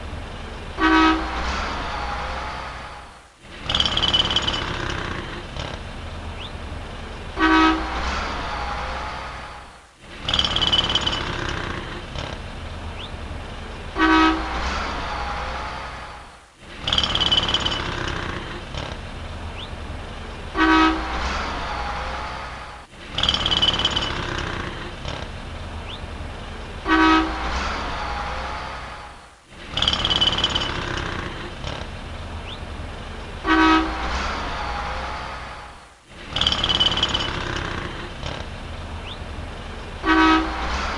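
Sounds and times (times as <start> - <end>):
traffic rumble: 0.0 - 40.9
car horn honk: 0.8 - 1.4, 7.4 - 8.0, 14.0 - 14.6, 20.5 - 21.2, 26.8 - 27.5, 33.4 - 34.1, 40.0 - 40.9.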